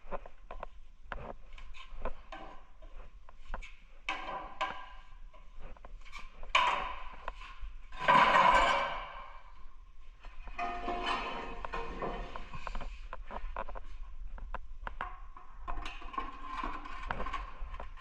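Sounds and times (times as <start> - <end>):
scraping on tile: 10.2 - 15.0, 15.7 - 18.0.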